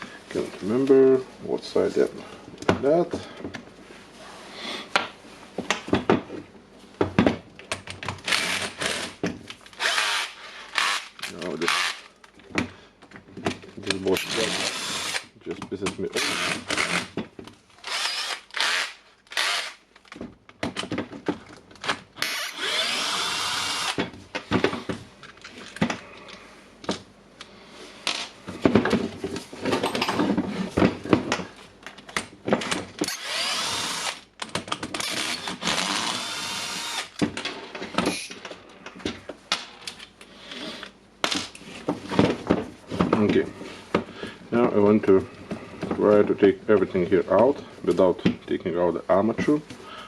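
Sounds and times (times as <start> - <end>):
power tool running: 9.8 - 11.1, 14.2 - 15.2, 17.8 - 19.8, 22.2 - 24.0, 33.0 - 34.2, 35.0 - 37.2.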